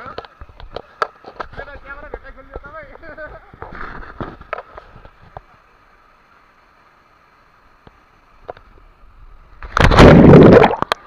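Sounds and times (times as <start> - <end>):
water splash at microphone: 9.6 - 11.0.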